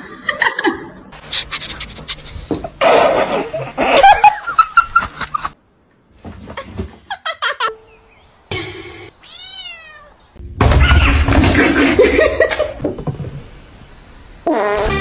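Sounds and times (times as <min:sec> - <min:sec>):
cat meowing: 0:09.2 - 0:10.2.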